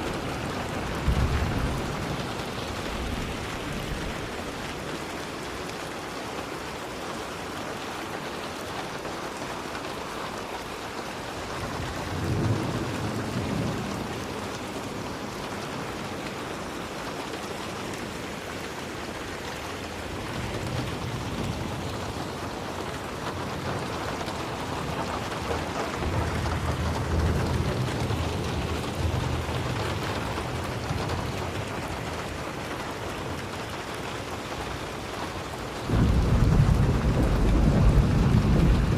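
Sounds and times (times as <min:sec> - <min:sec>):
thunder rumbling: 0:00.0 - 0:04.4, 0:11.6 - 0:15.3, 0:20.1 - 0:34.0, 0:35.6 - 0:38.9
steady rain hiss: 0:00.0 - 0:38.9.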